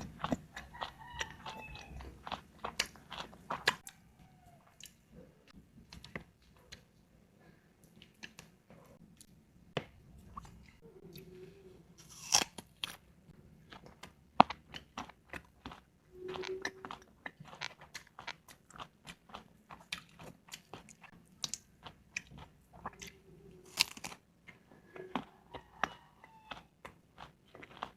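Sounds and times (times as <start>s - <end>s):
crunchy biting and chewing: 0.0s - 4.0s, 12.0s - 13.0s, 13.7s - 27.9s.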